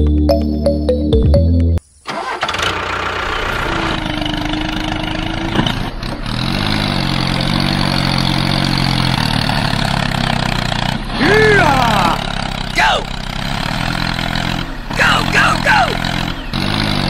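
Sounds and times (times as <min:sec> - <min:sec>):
music: 0:00.0 - 0:01.8
mini tractor engine running: 0:02.1 - 0:17.0.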